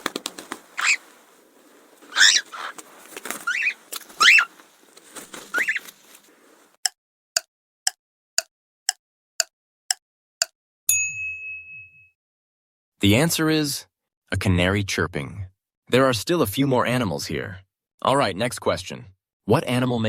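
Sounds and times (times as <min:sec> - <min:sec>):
canary chirping: 0:00.7 - 0:01.3, 0:02.0 - 0:04.6, 0:05.5 - 0:05.9
timer ticking: 0:06.8 - 0:10.6.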